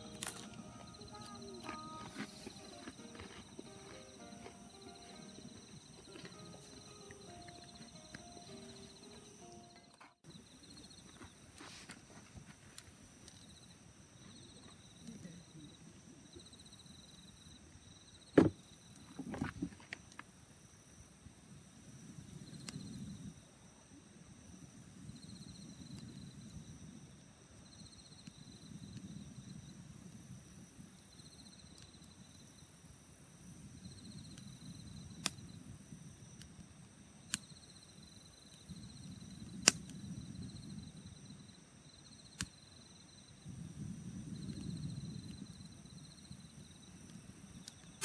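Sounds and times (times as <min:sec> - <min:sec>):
campfire popping: 0:00.0 - 0:10.2, 0:33.6 - 0:41.4
insects trilling: 0:00.0 - 0:11.5, 0:12.8 - 0:48.0
high insect hum: 0:00.0 - 0:48.0.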